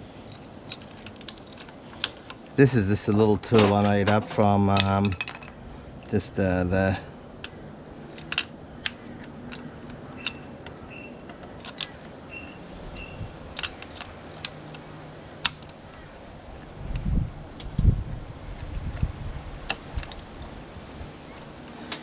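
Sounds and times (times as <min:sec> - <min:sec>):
metal tools clicking and tapping: 0:03.4 - 0:05.5, 0:07.4 - 0:12.1, 0:13.6 - 0:15.8.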